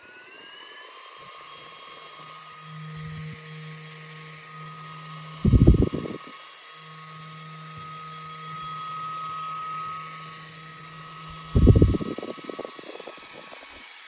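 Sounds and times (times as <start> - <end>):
small fan motor humming: 0.0 - 14.0
low fluttering burst: 5.4 - 6.2, 11.4 - 13.1.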